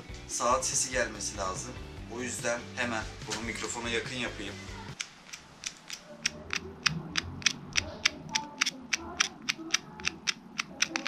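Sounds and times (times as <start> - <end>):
sharp clock ticks: 5.0 - 11.0.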